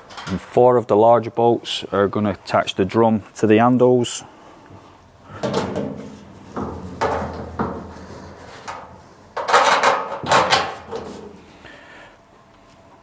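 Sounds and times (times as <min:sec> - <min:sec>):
metal parts knocking and clunking: 0:05.3 - 0:11.4
rattling scrape: 0:05.4 - 0:11.4.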